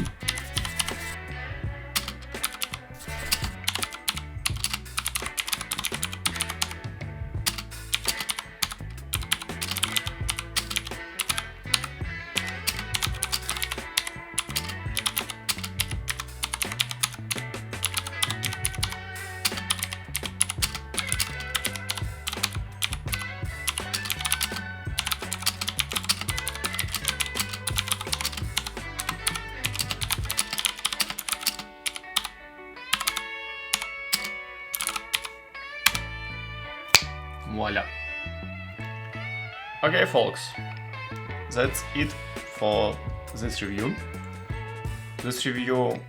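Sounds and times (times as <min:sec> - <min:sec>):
mechanical keyboard typing: 0:00.0 - 0:01.2, 0:02.0 - 0:06.8, 0:07.5 - 0:32.3, 0:32.9 - 0:35.3
background music: 0:00.0 - 0:46.0.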